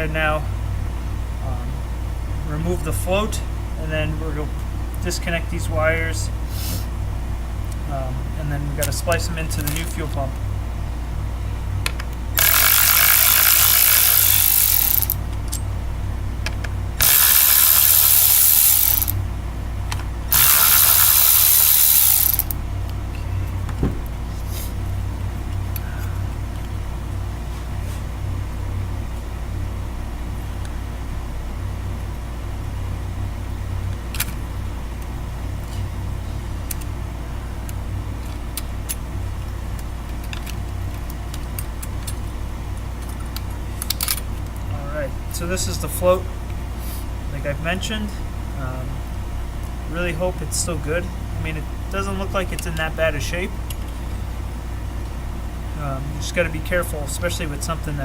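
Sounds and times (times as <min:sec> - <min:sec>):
steady low hum: 0:00.0 - 0:58.0
light clicks of parts handled: 0:08.8 - 0:10.5, 0:39.7 - 0:44.7
power tool running: 0:12.4 - 0:15.2, 0:17.0 - 0:19.2, 0:20.3 - 0:22.6.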